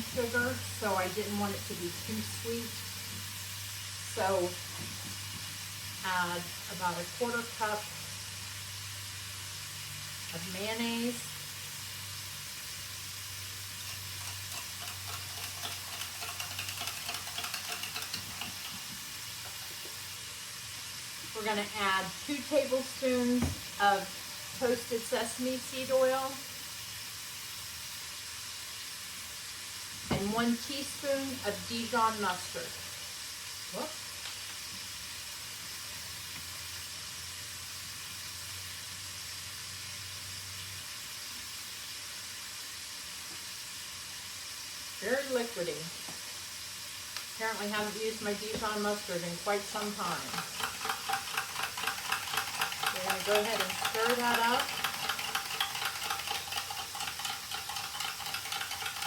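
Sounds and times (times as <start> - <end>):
chicken sizzling in a frying pan: 0.0 - 59.0
spoon scraping and tapping in jar: 13.9 - 19.0, 49.8 - 59.0.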